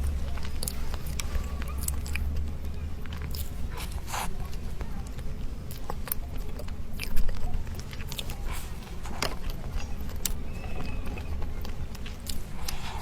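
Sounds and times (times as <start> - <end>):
crunchy pastry bites: 0.0 - 13.0.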